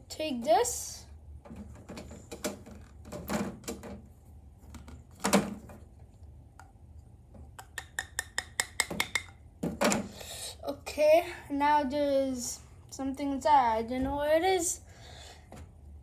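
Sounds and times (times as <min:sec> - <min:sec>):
small objects knocking and clicking: 0:07.3 - 0:09.9.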